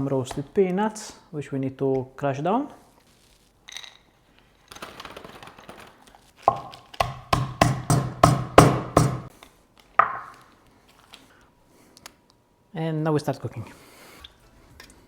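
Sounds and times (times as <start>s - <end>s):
pounding strikes with ring: 7.3s - 9.3s.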